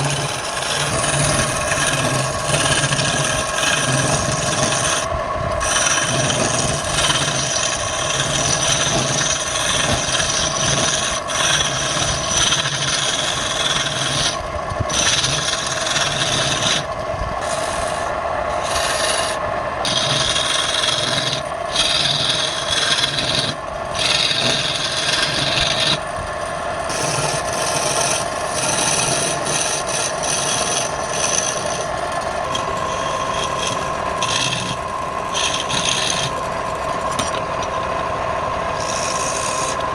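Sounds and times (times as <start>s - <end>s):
tool scraping spinning wood: 0.0s - 39.9s
wood lathe motor running: 0.0s - 39.9s.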